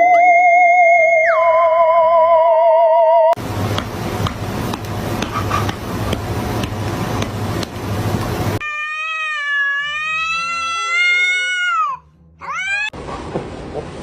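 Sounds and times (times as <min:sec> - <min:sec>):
cat meowing: 0:08.6 - 0:13.0.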